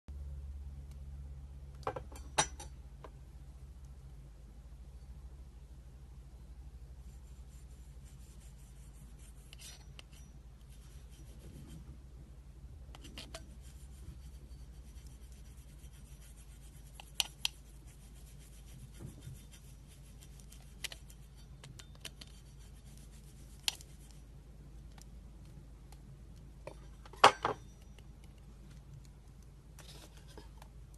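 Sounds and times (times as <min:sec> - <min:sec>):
low hum: 0:00.1 - 0:30.9
slime rubbing: 0:13.0 - 0:24.3.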